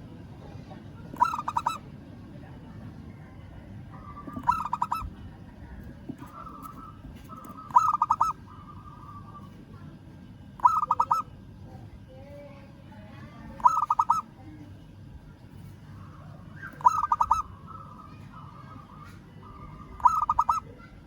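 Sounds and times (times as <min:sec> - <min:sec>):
dove cooing: 0:01.1 - 0:01.8, 0:04.0 - 0:05.2, 0:06.1 - 0:09.6, 0:10.6 - 0:11.3, 0:13.5 - 0:14.3, 0:16.4 - 0:21.0.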